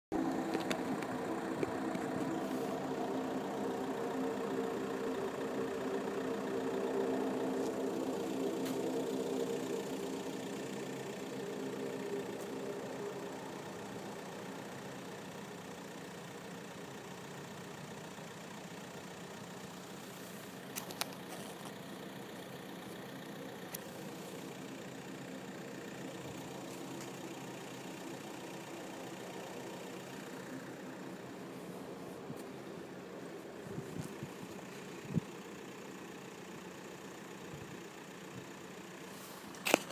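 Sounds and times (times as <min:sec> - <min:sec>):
diesel engine running: 0:00.1 - 0:39.9
drone of steady tones: 0:00.2 - 0:15.6.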